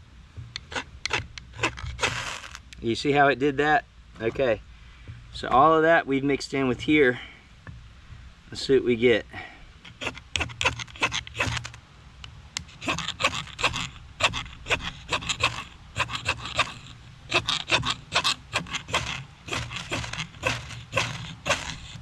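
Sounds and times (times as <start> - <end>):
fire striker scraping: 0.5 - 2.8, 9.8 - 11.8, 12.6 - 22.0.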